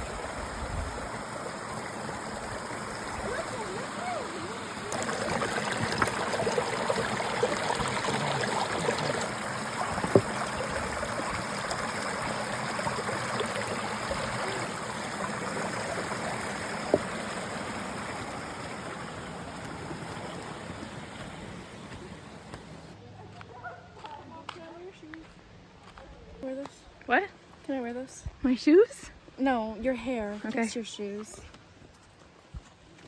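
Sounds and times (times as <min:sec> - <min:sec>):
stream water flowing: 0:00.0 - 0:23.0.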